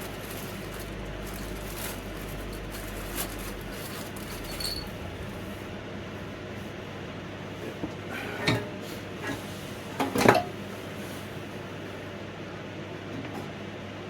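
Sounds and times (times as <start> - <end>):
low hum: 0.0 - 9.8.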